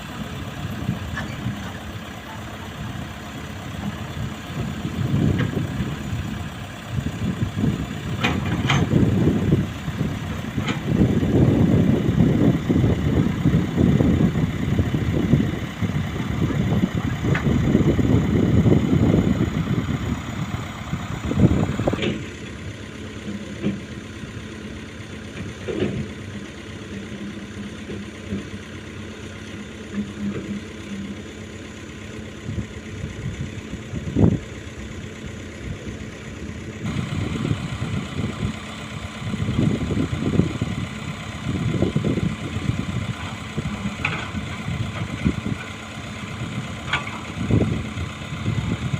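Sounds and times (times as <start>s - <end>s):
skid steer engine running: 0.0s - 48.9s
sharp knocks and clunks: 25.4s - 26.1s.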